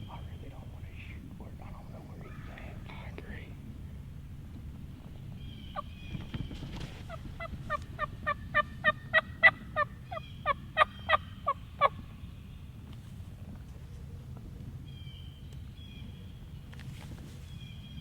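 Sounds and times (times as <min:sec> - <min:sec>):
turkey yelps: 0:07.1 - 0:12.0.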